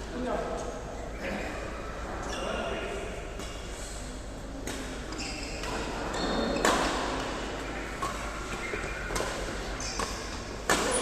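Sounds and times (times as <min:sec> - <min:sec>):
shoe squeaks in a hall: 0:00.8 - 0:02.7, 0:05.0 - 0:11.0
racket hitting shuttlecock: 0:04.6 - 0:11.0.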